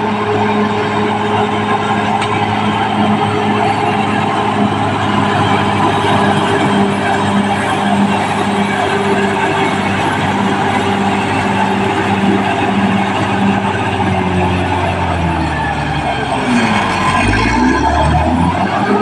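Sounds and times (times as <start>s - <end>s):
bulldozer diesel engine under load: 0.0s - 19.0s.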